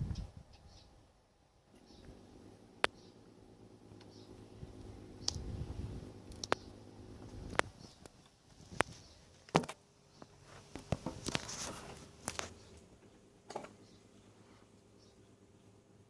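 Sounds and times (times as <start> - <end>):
faint motor hum: 0.0 - 16.0.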